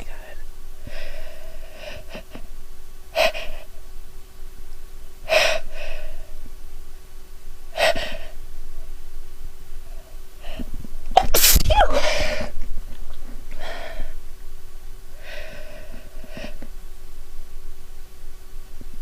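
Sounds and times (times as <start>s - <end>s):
woman gasping in-breaths: 13.6s - 14.2s.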